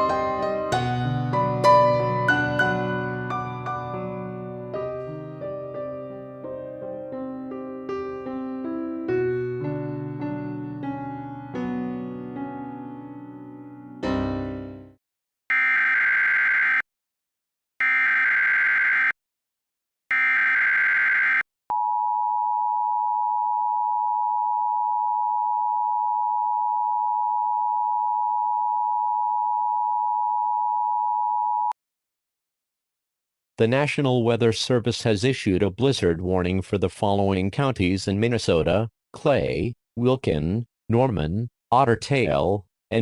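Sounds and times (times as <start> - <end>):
piano music: 0.0 - 15.0
data tone bursts: 15.5 - 16.8, 17.8 - 19.2, 20.1 - 21.4
steady two-tone alert beep: 17.8 - 19.2, 20.1 - 21.4.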